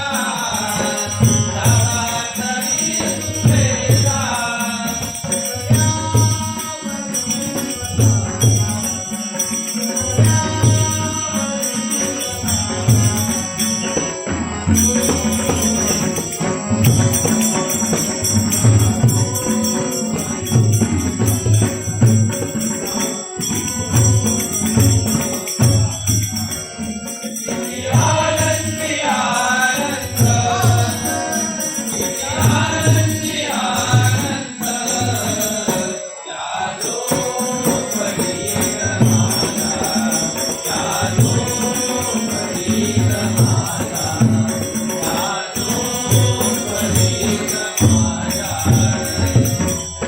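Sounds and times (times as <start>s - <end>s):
jingling hand cymbals: 0.0s - 50.0s
person singing devotional song: 0.0s - 50.0s
regular drum beat: 12.6s - 35.4s.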